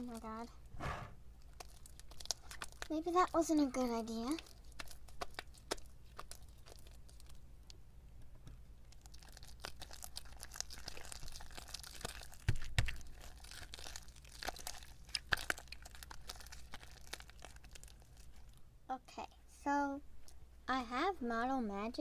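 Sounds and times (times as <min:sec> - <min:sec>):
low thumps: 0:00.7 - 0:01.2
slime crackling and tearing: 0:01.4 - 0:07.8, 0:08.9 - 0:18.6.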